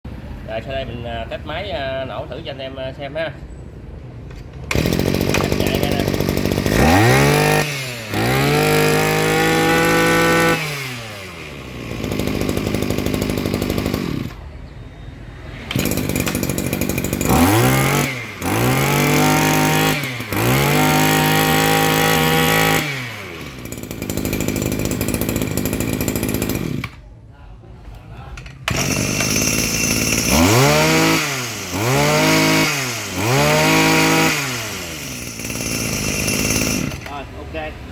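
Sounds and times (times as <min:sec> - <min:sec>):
grass-cutter engine revving: 0:04.7 - 0:14.4, 0:15.6 - 0:27.0, 0:28.7 - 0:37.3.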